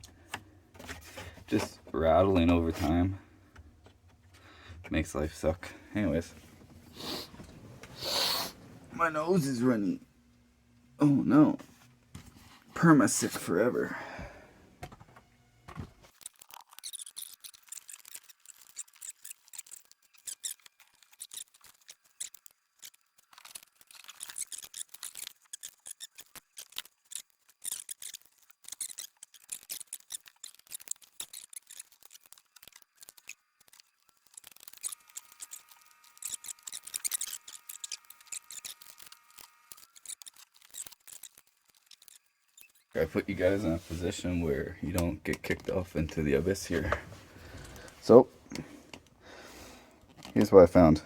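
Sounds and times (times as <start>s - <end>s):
hand tool clicking and scraping: 16.1s - 44.3s.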